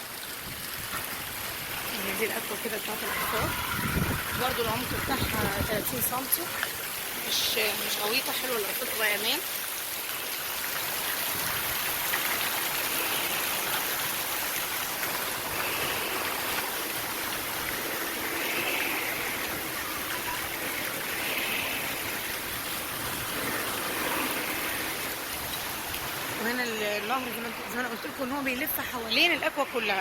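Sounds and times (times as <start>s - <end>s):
running and splashing water: 0.0s - 30.0s.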